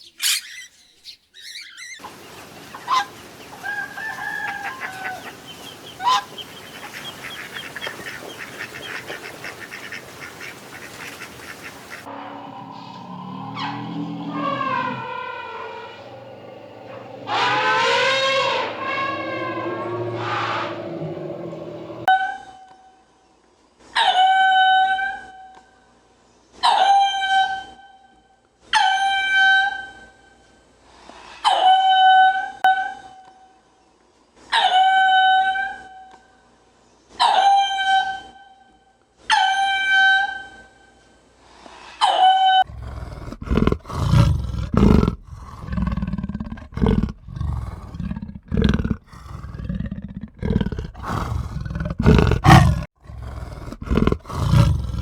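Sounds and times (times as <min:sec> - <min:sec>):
animal calling loudly: 0:00.0 - 0:22.1, 0:42.6 - 0:55.0
loud rough low pulses: 0:12.1 - 0:22.1.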